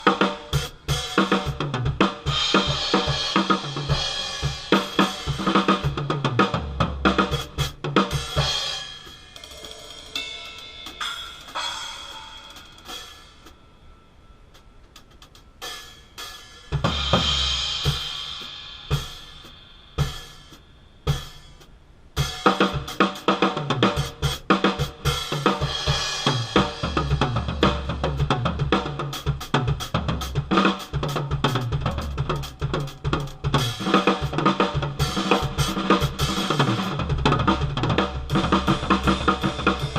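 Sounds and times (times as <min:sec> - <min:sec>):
drum kit groove: 0:00.0 - 0:13.6, 0:14.5 - 0:39.9
cymbals ringing: 0:08.2 - 0:21.6.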